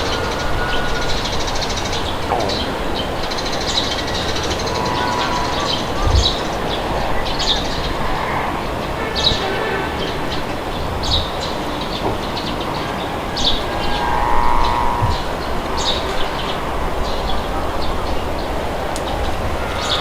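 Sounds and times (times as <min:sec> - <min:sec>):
birds chirping: 0:00.0 - 0:20.0
wind: 0:00.0 - 0:20.0.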